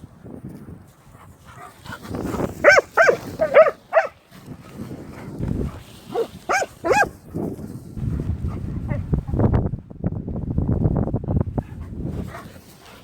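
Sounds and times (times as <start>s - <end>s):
dog yelping barks: 2.6s - 4.2s, 6.1s - 7.1s.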